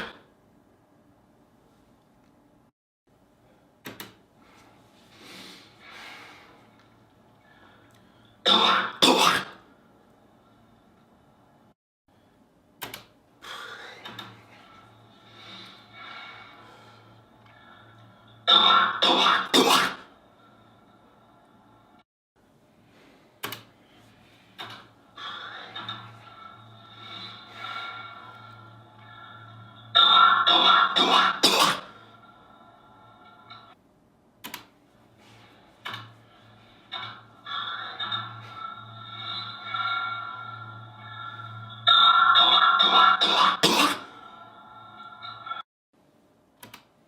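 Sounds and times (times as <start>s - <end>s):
man coughing with distortion: 8.5s - 9.6s, 18.5s - 20.1s, 30.5s - 32.0s, 43.2s - 44.2s.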